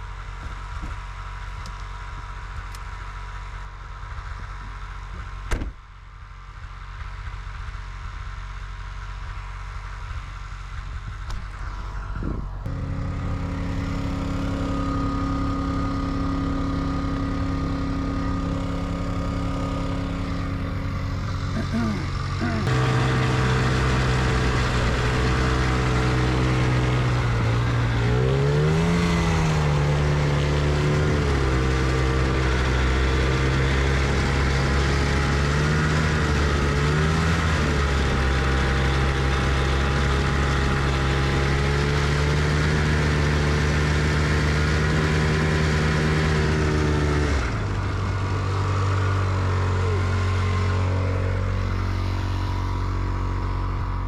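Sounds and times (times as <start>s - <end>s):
diesel tractor engine running: 0.0s - 54.0s.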